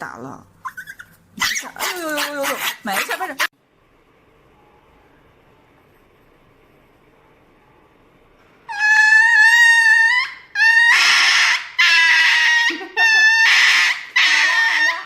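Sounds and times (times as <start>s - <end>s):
high-pitched animal cries: 8.7s - 15.0s.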